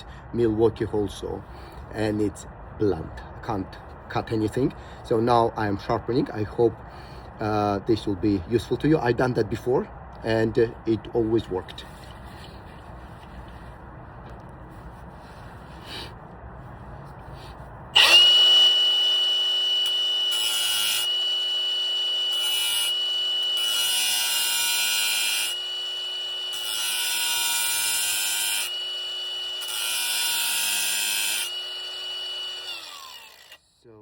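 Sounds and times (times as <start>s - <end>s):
power tool motor whining: 18.0s - 33.6s.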